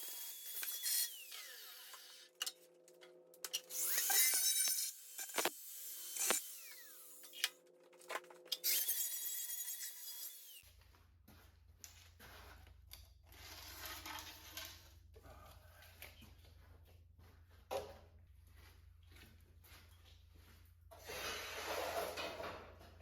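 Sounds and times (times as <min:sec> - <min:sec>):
angle grinder cutting steel: 0:00.0 - 0:02.6, 0:03.5 - 0:07.6, 0:08.5 - 0:10.6
faint scraping and handling: 0:20.9 - 0:22.6.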